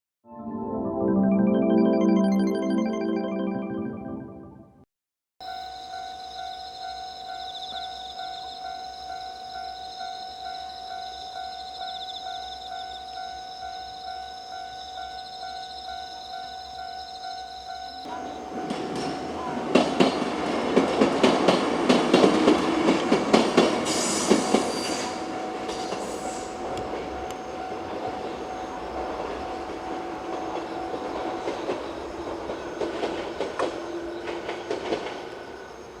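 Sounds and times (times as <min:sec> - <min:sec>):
level-crossing warning bell ringing: 0:05.4 - 0:19.8
train rumbling past: 0:05.4 - 0:36.0
wheels clacking over rail joints: 0:17.6 - 0:35.6.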